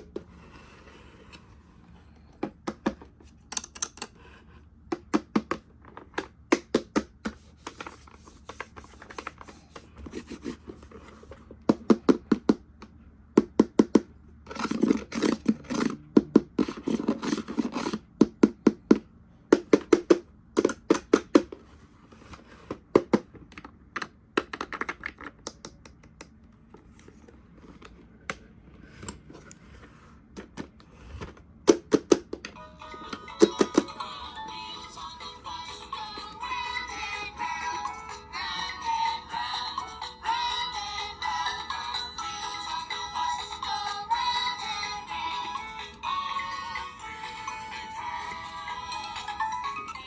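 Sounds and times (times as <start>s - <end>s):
plastic toys clicking and tapping: 23.0s - 26.4s.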